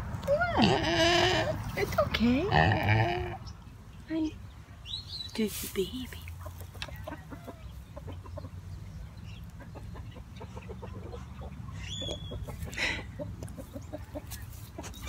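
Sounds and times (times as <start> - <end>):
chickens clucking: 6.2 - 15.0.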